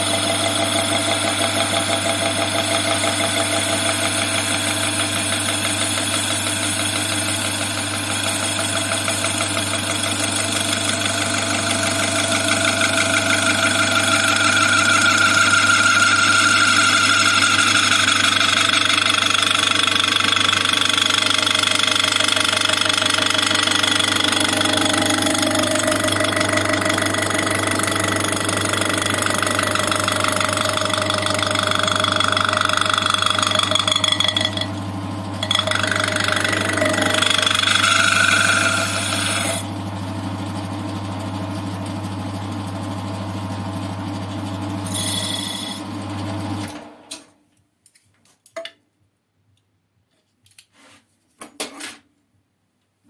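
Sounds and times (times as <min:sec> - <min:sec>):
tool cutting workpiece: 0:00.0 - 0:39.7, 0:44.8 - 0:46.0
lathe motor hum: 0:00.0 - 0:46.9.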